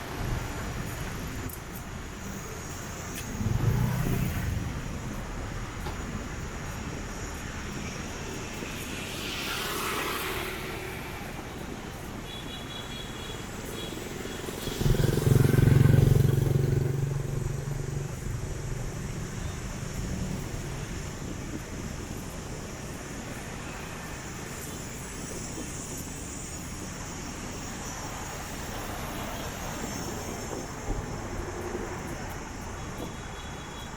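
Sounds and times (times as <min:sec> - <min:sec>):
motorbikes and cars passing: 0:00.0 - 0:26.5, 0:27.3 - 0:33.9
low engine passing close: 0:14.5 - 0:20.0.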